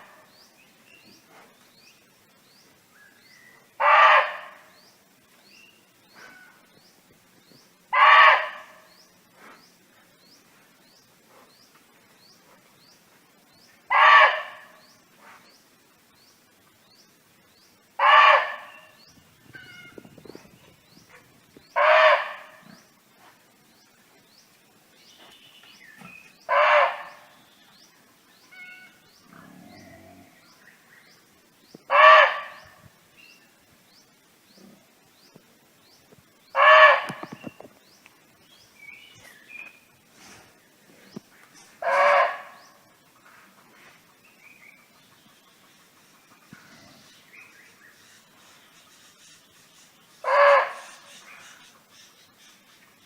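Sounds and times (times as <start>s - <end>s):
deer barking: 3.8s - 4.5s, 7.9s - 8.7s, 13.9s - 14.6s, 18.0s - 18.7s, 21.8s - 22.5s, 26.5s - 27.2s, 31.9s - 32.6s, 36.6s - 37.2s, 41.8s - 42.6s, 50.2s - 50.8s.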